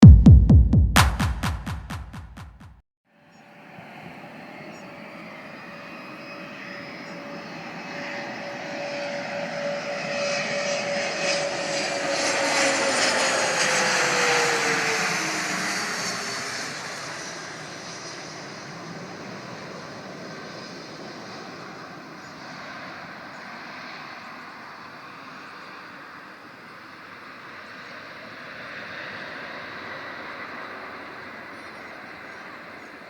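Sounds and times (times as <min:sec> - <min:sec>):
jet engines whining: 0:09.6 - 0:17.5.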